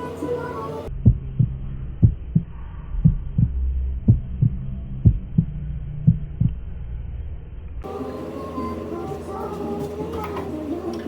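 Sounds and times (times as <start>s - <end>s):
low steady hum: 0.0s - 11.0s
heartbeat thumps: 0.9s - 6.6s.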